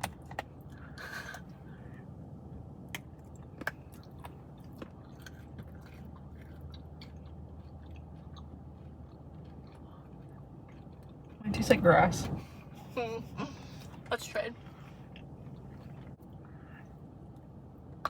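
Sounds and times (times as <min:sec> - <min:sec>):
low steady hum: 0:00.0 - 0:18.0
person chewing food: 0:02.9 - 0:11.4.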